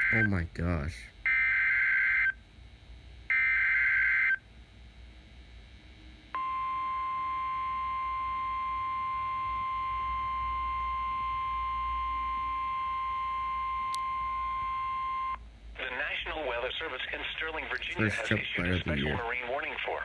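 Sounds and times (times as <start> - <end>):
steady warning alarm tone: 0.0 - 15.4.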